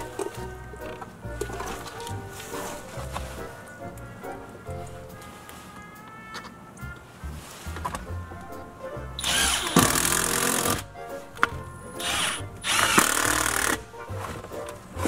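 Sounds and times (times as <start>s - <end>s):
background music: 0.0s - 15.0s
handheld power tool running: 9.2s - 10.8s, 12.0s - 13.8s.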